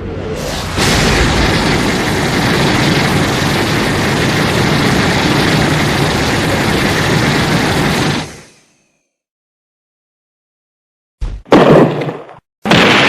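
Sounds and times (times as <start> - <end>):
loud rush of noise with deep rumble: 0.0 - 8.5.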